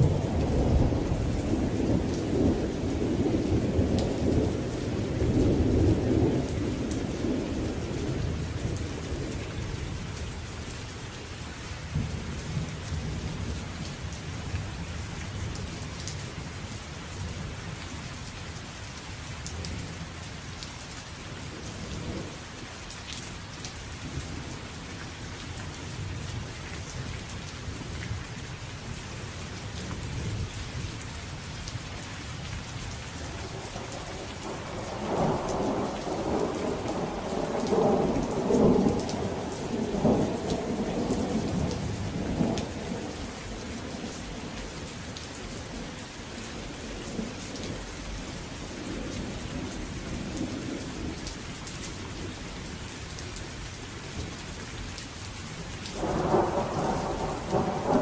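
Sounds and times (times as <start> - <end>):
steady rain: 0.0 - 58.0
thunder rumbling: 33.2 - 44.9, 56.0 - 58.0
thunder clap: 56.0 - 58.0.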